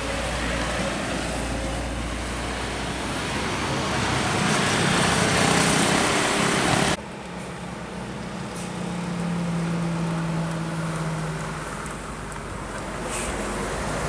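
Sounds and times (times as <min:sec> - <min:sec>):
vehicle passing close: 0:00.0 - 0:07.0
steady engine hum: 0:00.0 - 0:14.0.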